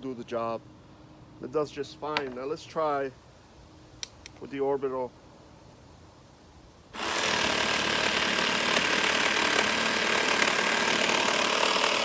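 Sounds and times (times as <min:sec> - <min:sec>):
jigsaw sawing wood: 0:07.0 - 0:12.0.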